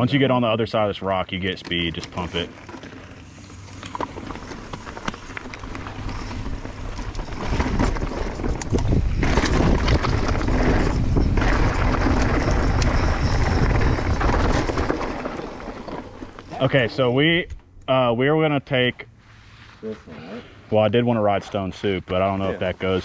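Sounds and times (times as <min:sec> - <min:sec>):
bike rattling: 0:01.3 - 0:17.4
tyres rumbling over rock: 0:02.2 - 0:17.0.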